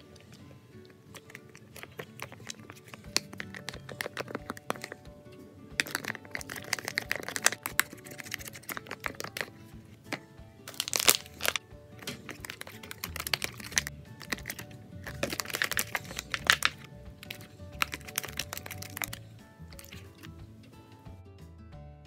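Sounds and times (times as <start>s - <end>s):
background music: 0.0s - 22.0s
slime crackling and clicking: 5.8s - 9.5s, 10.7s - 19.2s.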